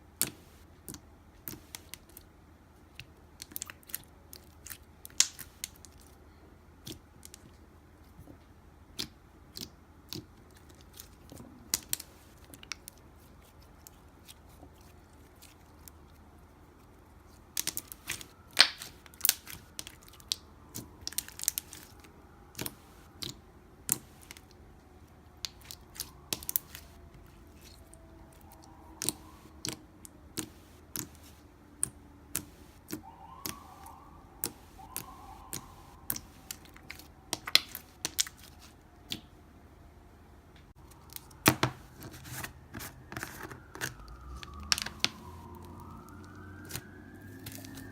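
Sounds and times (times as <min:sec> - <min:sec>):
slime clicking and popping: 0:03.0 - 0:06.1, 0:17.5 - 0:21.9, 0:25.4 - 0:26.9, 0:28.6 - 0:39.3, 0:43.2 - 0:47.8.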